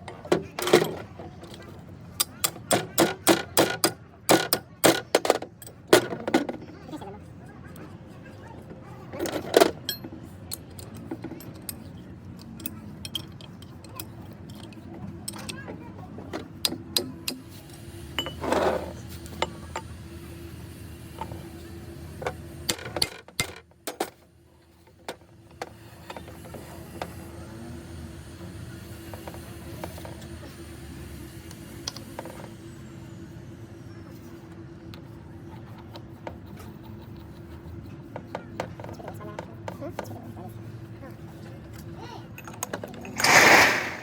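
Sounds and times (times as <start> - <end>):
metal tools clinking: 42.3 - 44.0
metal scrape: 43.0 - 44.0
steady hum: 43.0 - 44.0.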